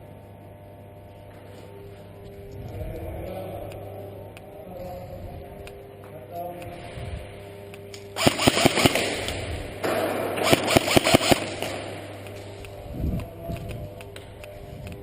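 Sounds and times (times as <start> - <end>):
airsoft gun firing bursts: 8.2 - 12.4.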